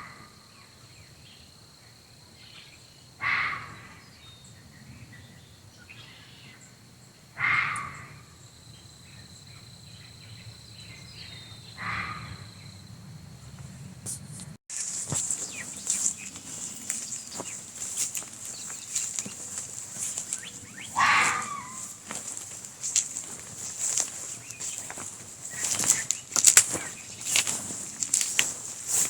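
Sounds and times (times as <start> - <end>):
high insect drone: 0.1 - 13.7, 14.7 - 29.0
echoing animal call: 3.2 - 4.0, 7.4 - 8.3, 11.4 - 12.6, 18.5 - 22.4.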